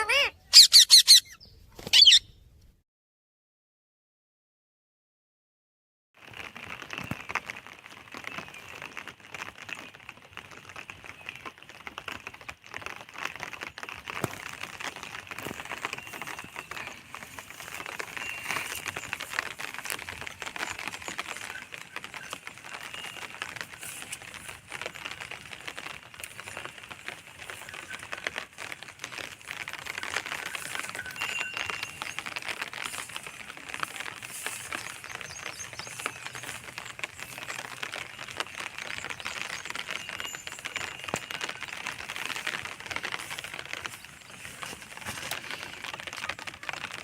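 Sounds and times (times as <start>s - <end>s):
parrots chattering: 0.0s - 2.2s
short high parrot chirps: 0.2s - 2.3s.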